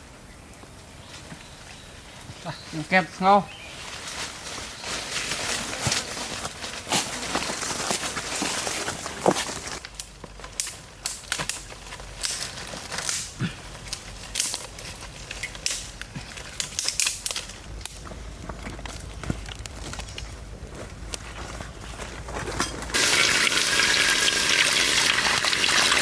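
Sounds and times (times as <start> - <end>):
soft crinkling rustle: 3.5 - 23.0.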